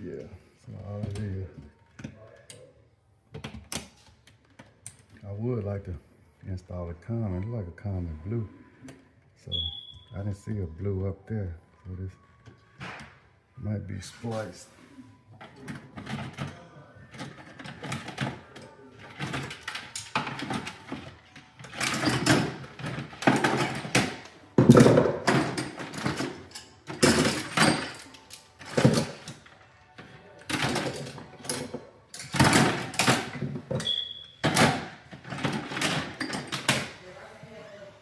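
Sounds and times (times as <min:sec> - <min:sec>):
short high beep: 0:09.5 - 0:10.1.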